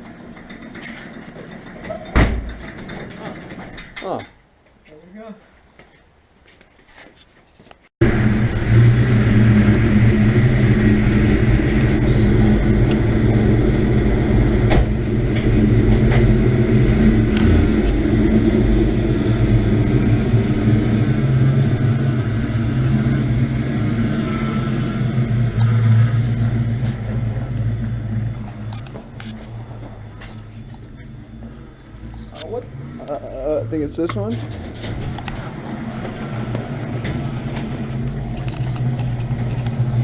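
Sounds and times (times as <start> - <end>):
car engine running: 8.0 - 40.0.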